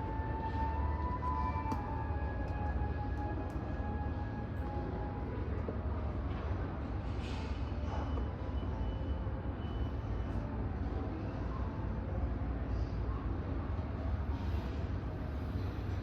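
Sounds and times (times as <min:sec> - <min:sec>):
low rumble of aircraft: 0:00.0 - 0:16.0.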